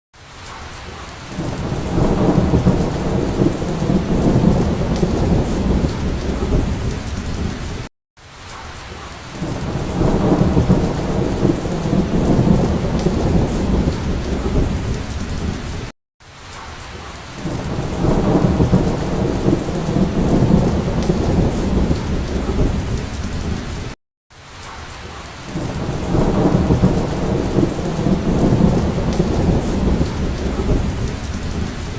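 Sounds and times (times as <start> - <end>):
steady rain: 0.2 - 31.9
low rolling thunder rumble: 1.4 - 7.7, 9.4 - 15.9, 17.4 - 23.9, 25.6 - 31.9.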